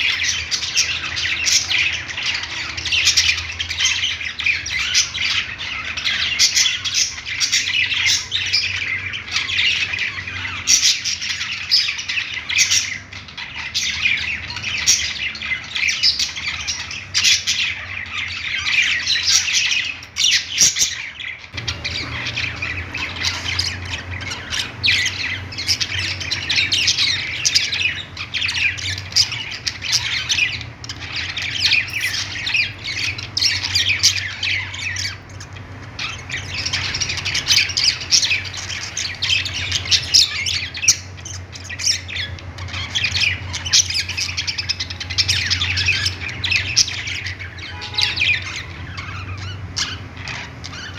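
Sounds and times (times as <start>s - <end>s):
budgerigars chattering and squawking: 0.0s - 50.9s.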